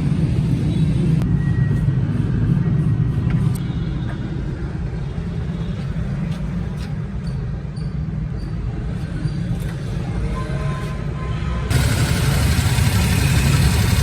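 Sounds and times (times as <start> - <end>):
van engine running: 11.7 - 14.0.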